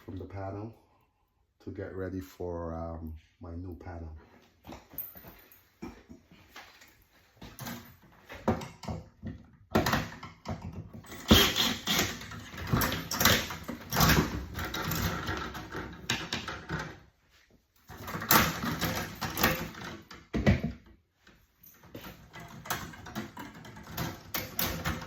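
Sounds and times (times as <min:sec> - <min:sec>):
tools knocking and clattering: 0:04.6 - 0:17.1, 0:17.9 - 0:25.0.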